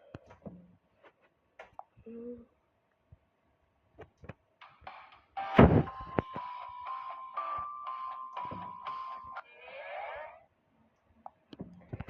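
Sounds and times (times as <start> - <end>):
music with high tone: 4.8 - 9.4.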